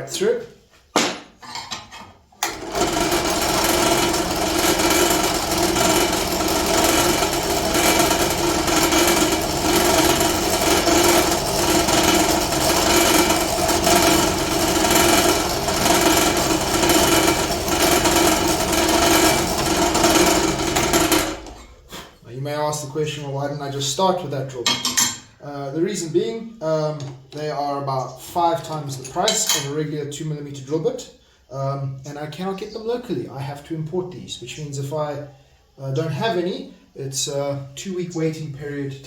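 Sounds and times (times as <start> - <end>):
drill press motor running: 2.4 - 21.8.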